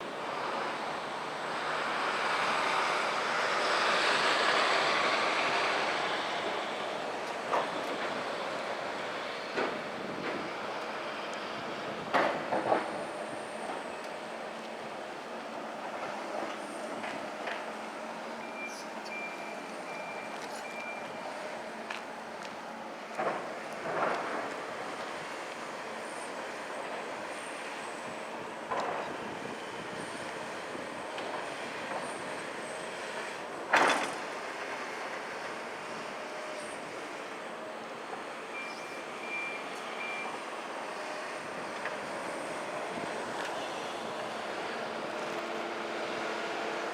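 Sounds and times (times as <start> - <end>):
reversing alarm beeping: 18.4 - 21.1, 38.6 - 40.4.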